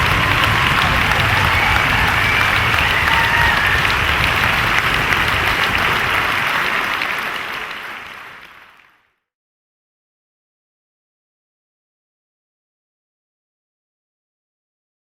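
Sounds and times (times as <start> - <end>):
audience applauding: 0.0 - 9.1.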